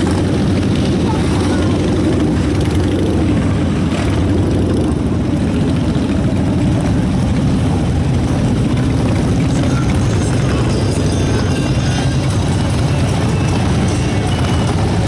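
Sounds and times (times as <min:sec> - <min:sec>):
many motorcycle engines running: 0:00.0 - 0:15.0.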